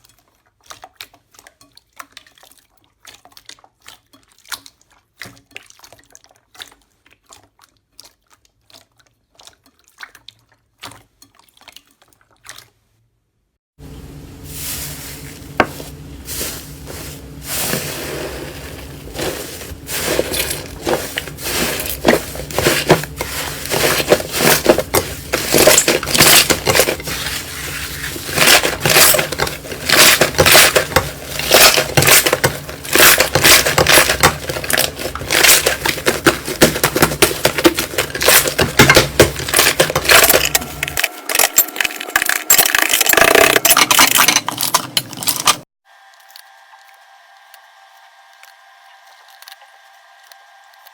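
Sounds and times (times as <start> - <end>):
faint steady hum: 13.8 - 42.6.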